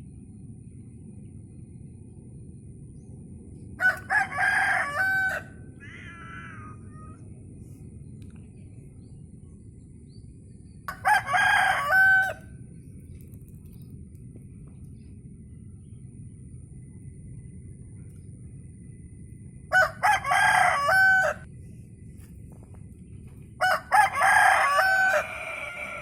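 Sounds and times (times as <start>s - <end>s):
rooster crowing: 3.8s - 7.1s, 10.9s - 12.5s, 19.7s - 21.5s, 23.6s - 26.0s
low rumble: 12.4s - 19.8s.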